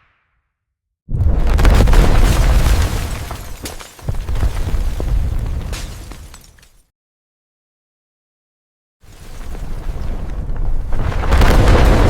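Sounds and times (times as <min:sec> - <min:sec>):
debris cracking: 0:01.2 - 0:06.8, 0:09.5 - 0:12.0.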